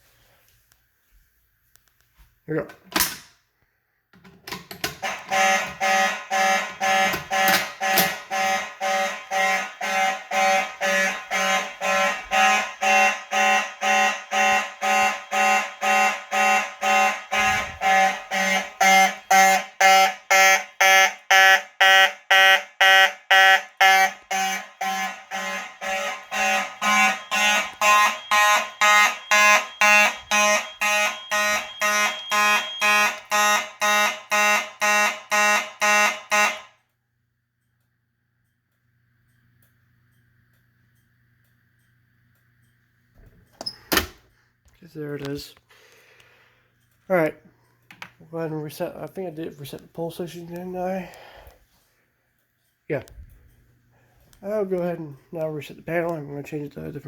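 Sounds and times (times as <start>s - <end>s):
fire alarm horns pulsing: 4.8s - 37.0s.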